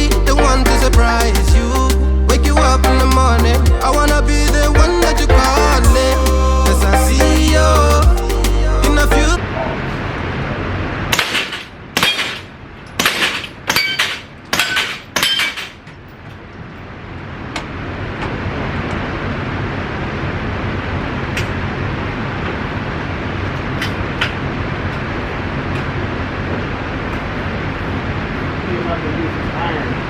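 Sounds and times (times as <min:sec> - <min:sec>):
gunshots with metallic ring: 0:11.1 - 0:15.7.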